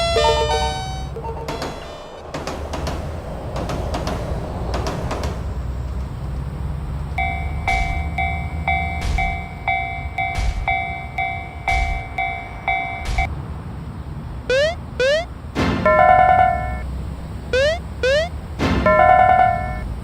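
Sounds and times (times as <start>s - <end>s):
level crossing warning bell: 0.0s - 1.8s, 7.2s - 13.3s, 14.5s - 16.9s, 17.5s - 20.0s
passing train rumble: 0.0s - 20.0s
train wheels clacking: 1.3s - 5.7s, 7.2s - 13.3s.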